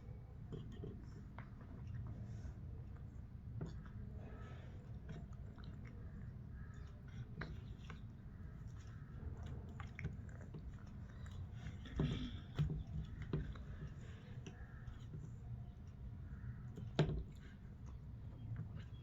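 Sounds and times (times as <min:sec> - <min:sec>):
person chewing food: 0:04.8 - 0:16.2.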